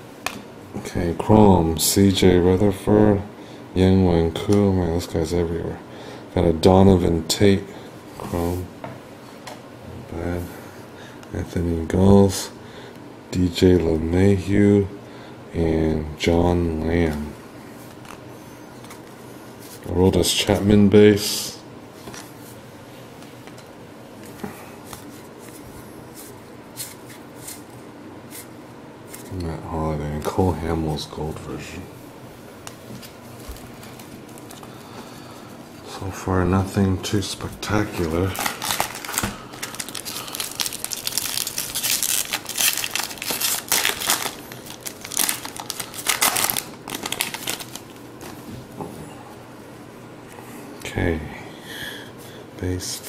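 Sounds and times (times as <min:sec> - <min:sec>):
faint steady hum: 0:00.0 - 0:53.0
trading cards swishing: 0:24.8 - 0:27.7
card pack wrapper crinkling: 0:37.8 - 0:48.0.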